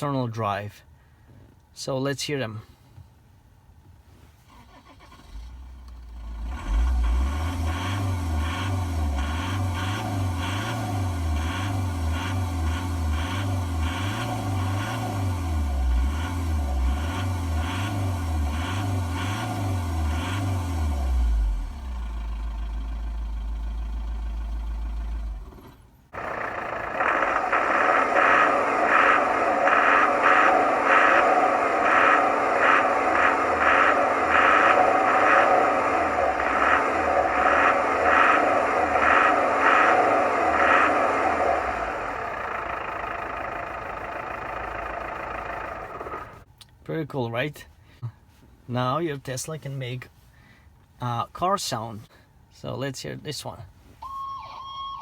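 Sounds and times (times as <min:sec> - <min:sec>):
low wavering hum: 0:26.2 - 0:46.4
pulsing sound: 0:26.2 - 0:46.4.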